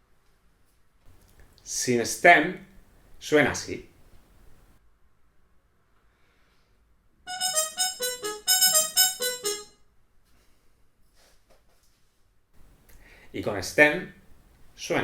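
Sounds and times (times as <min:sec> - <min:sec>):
muted trumpet short notes: 0:07.3 - 0:09.7.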